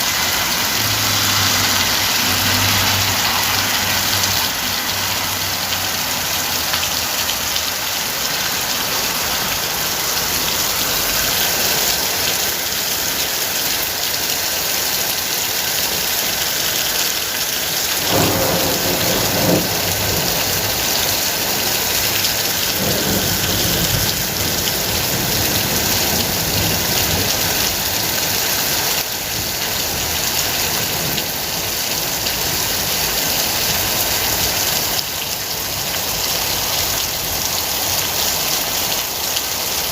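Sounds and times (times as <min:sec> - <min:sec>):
heavy rain: 0:00.0 - 0:39.9
thunder rumbling: 0:18.0 - 0:27.6.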